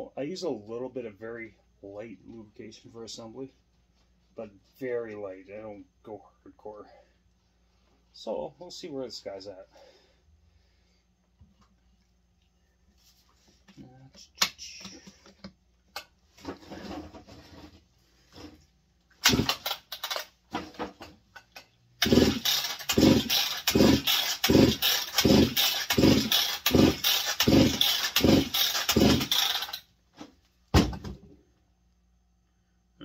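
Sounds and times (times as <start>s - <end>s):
chainsaw engine cranking without firing: 19.2s - 20.3s, 22.0s - 29.9s.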